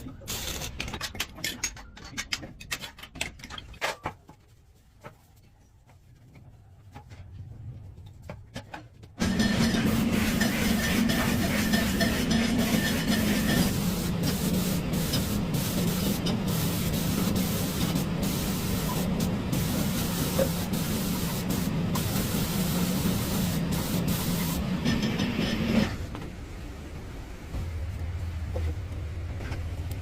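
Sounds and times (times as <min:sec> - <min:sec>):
machine hiss: 0:09.2 - 0:26.0.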